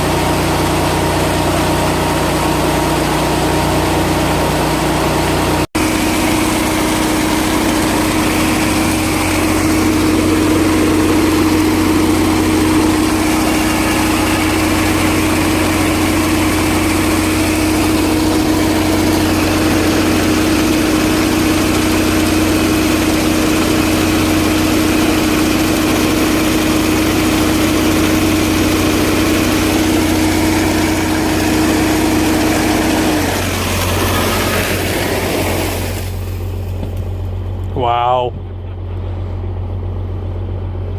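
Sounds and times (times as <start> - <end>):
tractor engine running: 0.0 - 40.9
high-pitched hum: 5.8 - 21.8.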